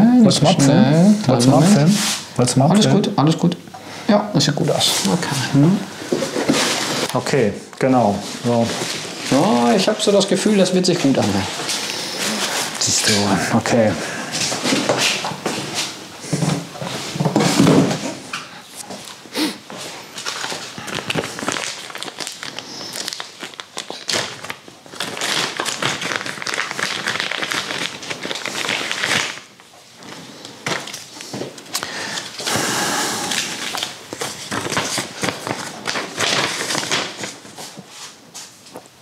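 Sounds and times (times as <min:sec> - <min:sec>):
packing material crinkling: 0:19.9 - 0:32.6, 0:33.2 - 0:38.8.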